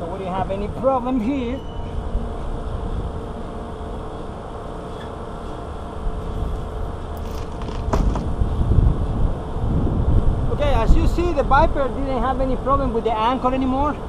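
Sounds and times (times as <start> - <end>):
faint steady hum: 0.0 - 14.0
low rumble: 5.6 - 12.7.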